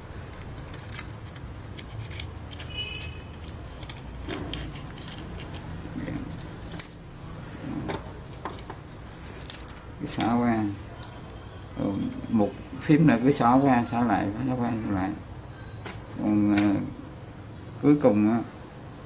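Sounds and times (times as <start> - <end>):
metal pieces clicking and scraping: 0.3 - 7.0.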